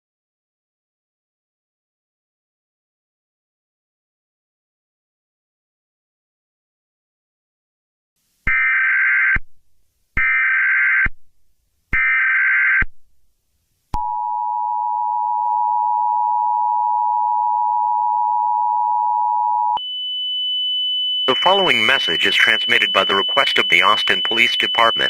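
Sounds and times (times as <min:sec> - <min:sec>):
digital data bursts: 0:21.3 - 0:25.0
two-tone attention signal: 0:21.3 - 0:25.0.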